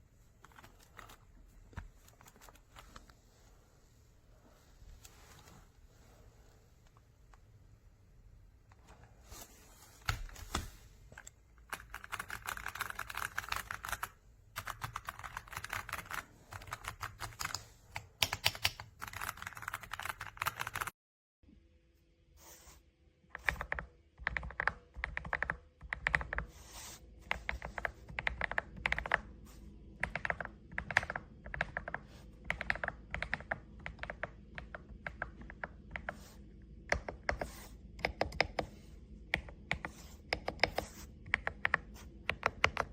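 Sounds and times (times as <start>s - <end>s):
mechanical keyboard typing: 0.4s - 1.2s, 11.2s - 20.9s, 23.4s - 26.5s, 27.3s - 29.3s, 30.0s - 36.2s, 36.9s - 38.7s, 39.4s - 42.9s.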